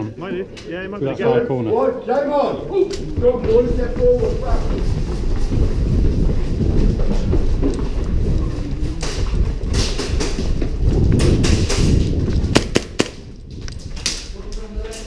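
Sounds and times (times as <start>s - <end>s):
gear jostling microphone: 3.0s - 15.0s
heavy footfalls and rumble: 3.1s - 13.9s.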